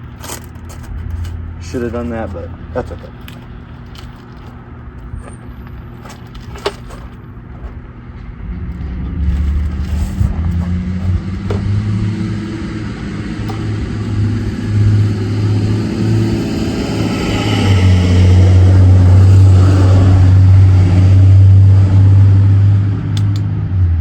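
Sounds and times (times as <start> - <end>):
vehicle engine droning: 0.0 - 24.0.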